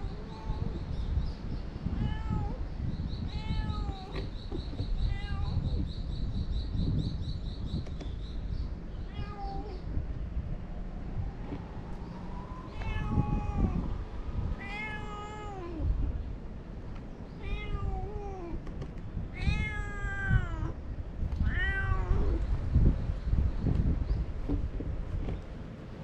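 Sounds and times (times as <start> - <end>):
low rumbling background noise: 0.0 - 26.0
cat meowing: 1.9 - 2.6, 3.3 - 4.3, 5.1 - 5.9, 9.0 - 9.9, 12.7 - 13.9, 14.6 - 15.9, 17.4 - 18.6, 19.3 - 20.8, 21.4 - 22.4.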